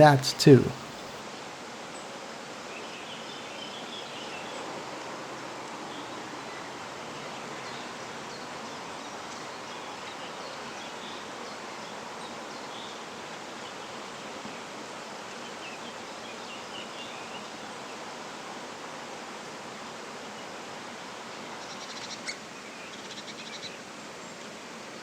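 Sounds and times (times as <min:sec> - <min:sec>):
outdoor background hiss: 0:00.0 - 0:01.1.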